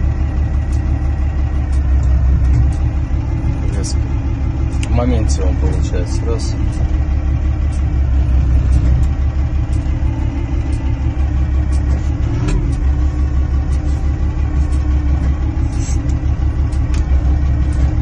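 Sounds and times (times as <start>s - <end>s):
forklift diesel engine running: 0.0s - 18.0s.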